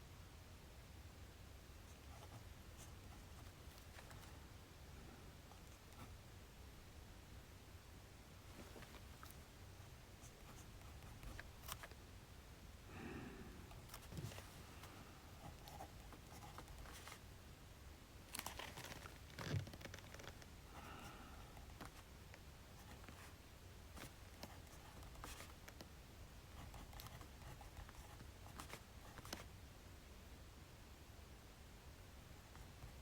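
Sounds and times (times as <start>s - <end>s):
pen scratching on paper: 1.9s - 4.4s, 10.2s - 11.9s, 15.4s - 17.2s, 24.0s - 25.6s, 26.5s - 29.4s
paper rustling: 18.3s - 20.4s.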